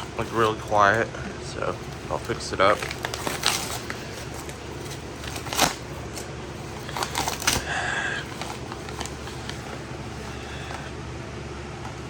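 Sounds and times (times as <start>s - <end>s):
steady low hum: 0.0s - 12.0s
package rustling and crinkling: 1.6s - 10.8s.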